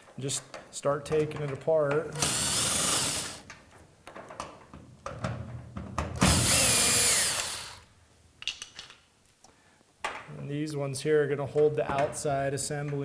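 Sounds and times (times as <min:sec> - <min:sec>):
power drill whining: 0:02.2 - 0:03.4, 0:06.2 - 0:07.9.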